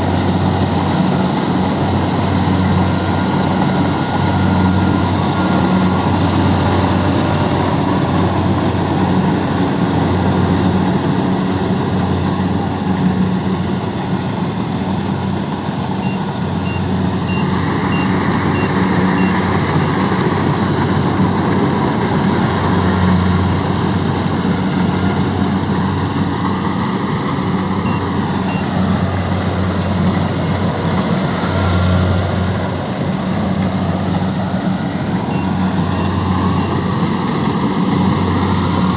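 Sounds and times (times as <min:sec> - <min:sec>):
harvester engine running: 0:00.0 - 0:38.9
faint high beeps: 0:16.0 - 0:19.5, 0:27.8 - 0:29.0, 0:35.3 - 0:36.9.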